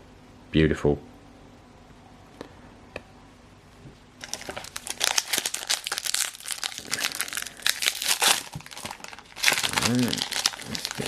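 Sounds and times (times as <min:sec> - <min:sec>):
foil wrapper crinkling: 0:04.2 - 0:11.0.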